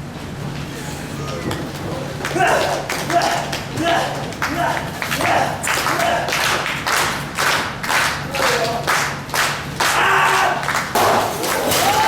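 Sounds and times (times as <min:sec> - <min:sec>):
crowd clapping in rhythm: 0:02.2 - 0:11.0.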